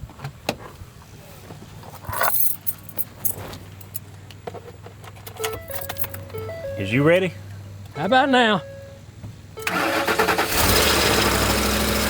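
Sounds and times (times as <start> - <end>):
keys jangling: 2.0 - 4.0, 5.0 - 6.6
low steady hum: 2.2 - 10.2.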